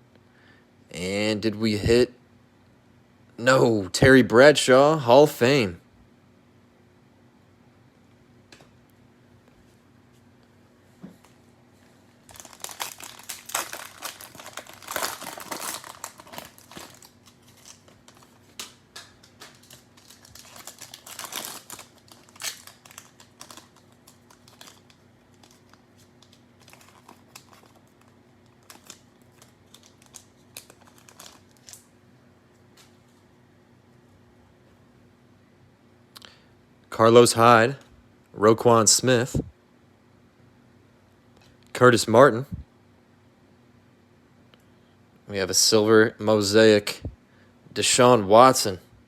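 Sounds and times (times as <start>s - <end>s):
cellophane tearing and crinkling: 12.3s - 31.9s.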